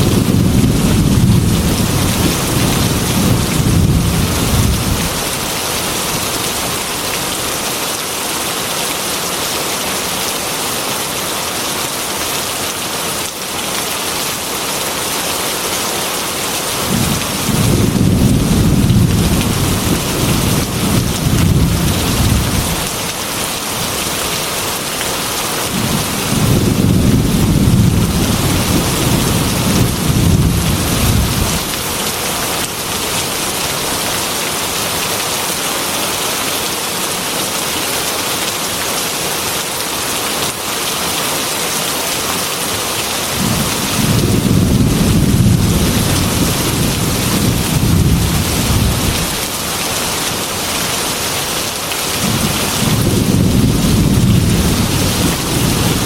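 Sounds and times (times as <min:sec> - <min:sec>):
thunder rumbling: 0:00.0 - 0:05.4, 0:16.9 - 0:22.9, 0:25.7 - 0:31.8, 0:43.4 - 0:49.4, 0:52.2 - 0:56.0.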